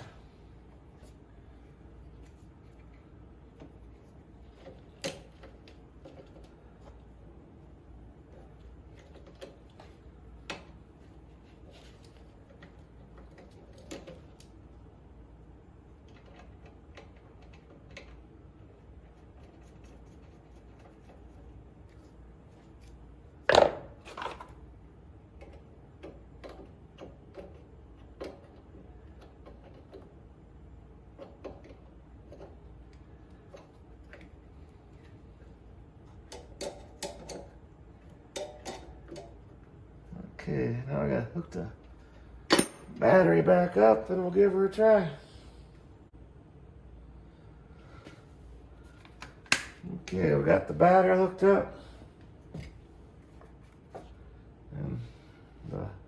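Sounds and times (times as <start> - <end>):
hand tools clicking and tapping: 36.3 - 37.5, 38.3 - 39.4.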